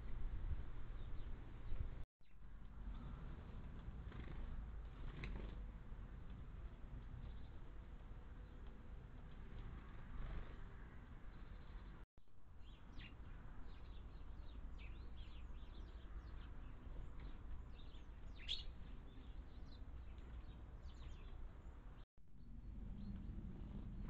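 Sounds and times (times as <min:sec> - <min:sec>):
small birds chirping: 0:12.6 - 0:23.8
low background rumble: 0:18.8 - 0:24.0.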